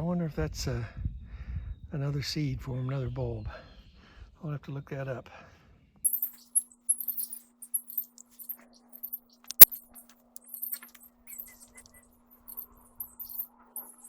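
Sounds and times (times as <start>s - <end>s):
high-pitched chirps: 6.1s - 14.0s
sharp click: 9.4s - 12.0s.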